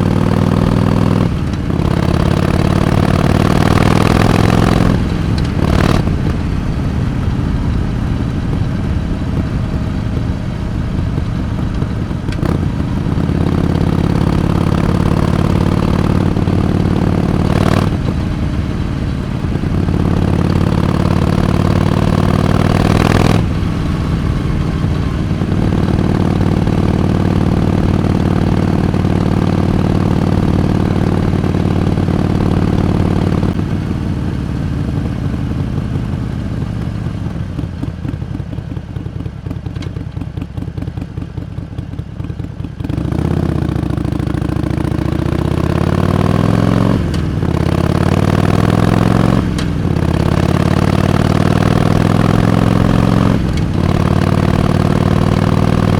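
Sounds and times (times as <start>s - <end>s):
motorcycle engine accelerating: 0.0s - 55.9s
gear change: 0.6s - 30.6s.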